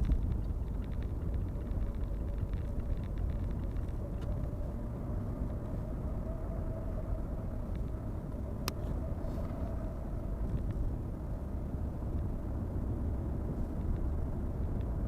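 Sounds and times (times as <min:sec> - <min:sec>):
car road and engine rumble: 0:00.0 - 0:15.0
faint constant hum: 0:00.0 - 0:15.0.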